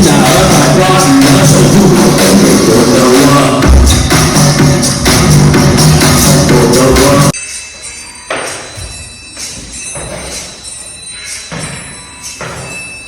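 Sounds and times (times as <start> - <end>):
loud rap music: 0.0 - 7.4
quiet background music with soft beat: 7.3 - 13.0.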